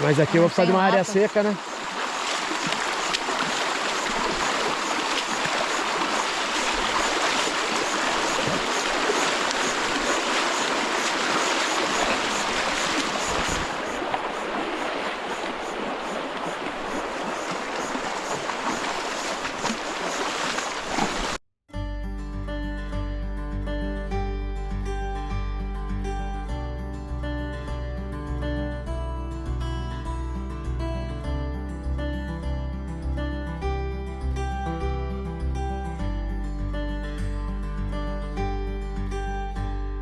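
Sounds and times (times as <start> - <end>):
river water rushing over rocks: 0.0 - 21.4.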